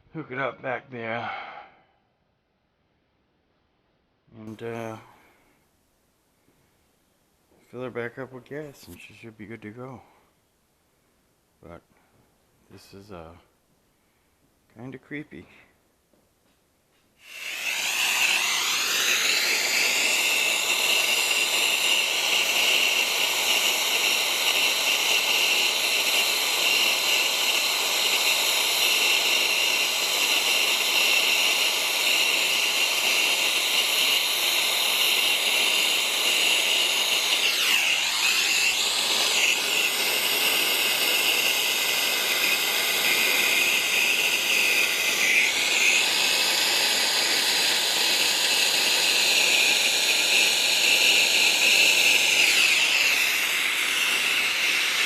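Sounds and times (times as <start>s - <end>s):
brazing torch hissing: 17.2s - 55.0s.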